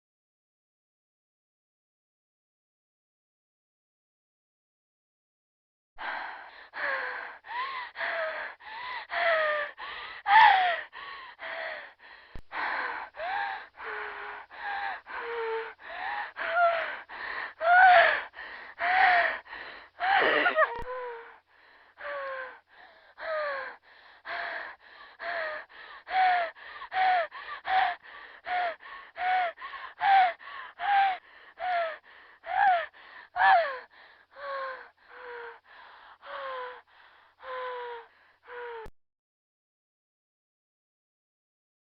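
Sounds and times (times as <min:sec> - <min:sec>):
woman panting heavily: 0:06.0 - 0:38.9.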